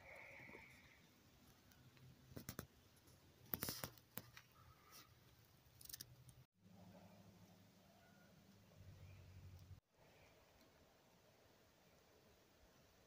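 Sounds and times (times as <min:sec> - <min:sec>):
faint scrapes and clicks: 0:00.2 - 0:06.5.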